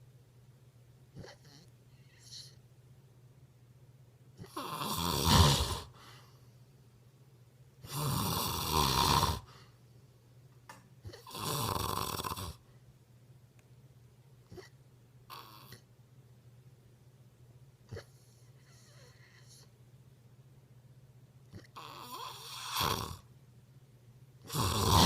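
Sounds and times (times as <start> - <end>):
person snoring: 4.4 - 6.0, 7.8 - 9.6, 11.1 - 12.6, 21.6 - 23.2, 24.5 - 25.0.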